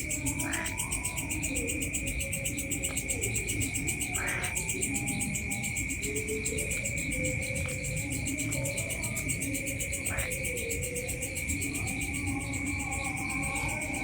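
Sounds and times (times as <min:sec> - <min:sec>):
high cricket trill: 0:00.0 - 0:14.0
pulsing insect chirr: 0:00.0 - 0:14.0.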